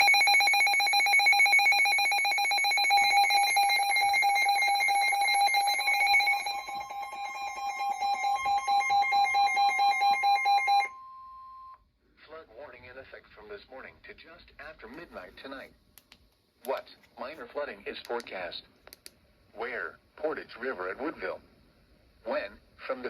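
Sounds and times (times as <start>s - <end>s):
electronic alarm pulsing rapidly: 0.0s - 10.9s
faint steady tone: 6.3s - 12.0s.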